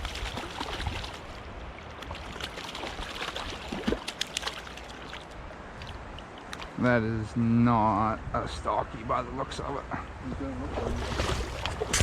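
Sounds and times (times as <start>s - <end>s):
stream water rushing: 0.0s - 7.9s, 10.6s - 12.0s
fish splashing at surface: 10.8s - 12.0s.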